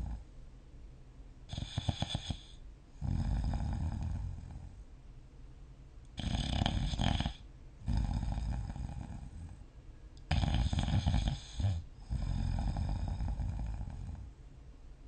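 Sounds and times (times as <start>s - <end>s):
person snoring: 1.5s - 4.7s, 6.2s - 9.6s, 10.3s - 14.2s.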